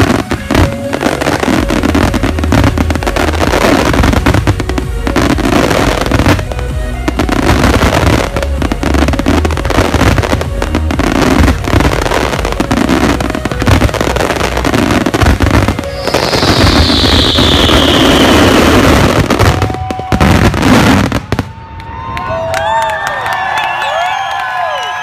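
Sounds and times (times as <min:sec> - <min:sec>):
fireworks bangs and crackling: 0:00.0 - 0:22.2
falling firework whistle: 0:11.1 - 0:22.9.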